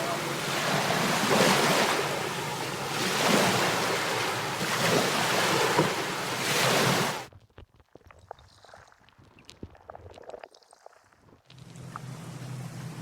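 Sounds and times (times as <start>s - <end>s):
ocean waves washing in: 0.0s - 7.3s.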